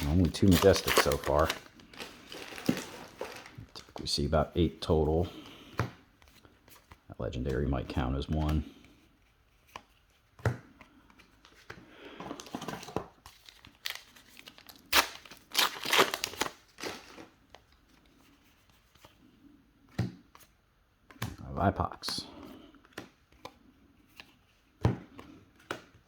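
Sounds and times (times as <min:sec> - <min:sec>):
foil wrapper tearing and crinkling: 0:00.0 - 0:03.7, 0:13.4 - 0:17.3.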